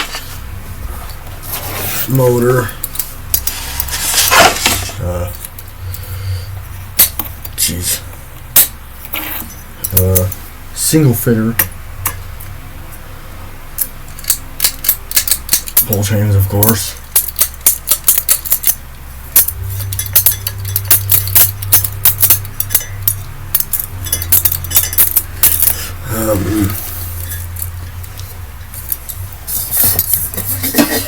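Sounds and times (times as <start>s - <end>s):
steady low hum: 0.0s - 31.0s
metal and glass pieces clinking: 2.8s - 5.6s, 7.0s - 7.5s, 13.8s - 31.0s.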